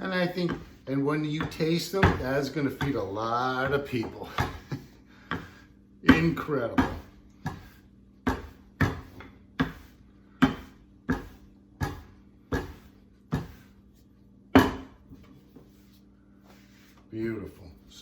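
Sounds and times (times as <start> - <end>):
rolling pin knocking on wooden board: 0.0 - 0.8, 1.4 - 13.7, 14.5 - 15.3.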